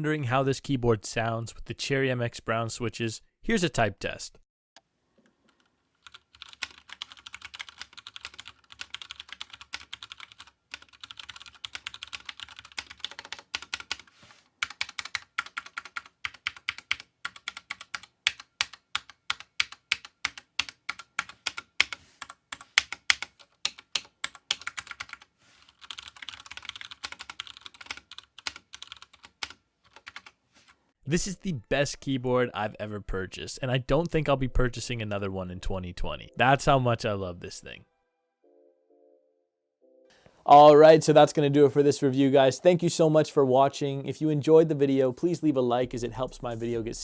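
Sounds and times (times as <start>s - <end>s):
mechanical keyboard typing: 6.0s - 30.3s.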